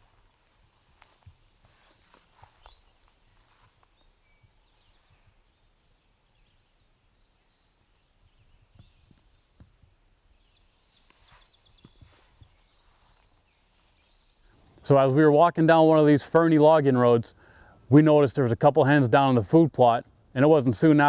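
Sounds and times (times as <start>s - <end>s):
woodland birdsong chirps: 0.0s - 16.0s.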